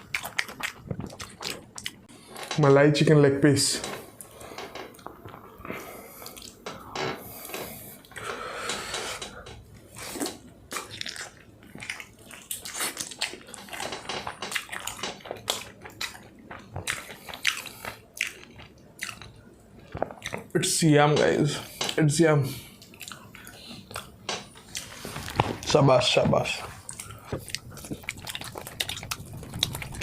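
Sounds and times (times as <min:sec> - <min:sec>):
mouth clicks and smacks chewing: 0:00.0 - 0:02.1, 0:04.2 - 0:06.6, 0:10.0 - 0:20.5, 0:22.8 - 0:24.9, 0:26.7 - 0:30.0.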